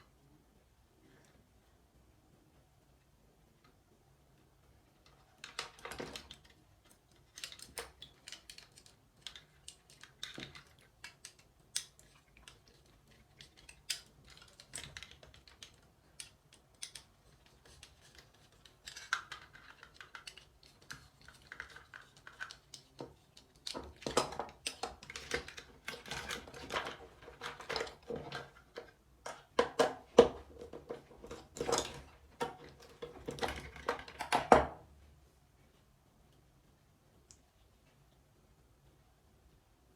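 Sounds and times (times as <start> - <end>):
hands handling wires and switch parts: 4.9 - 34.5.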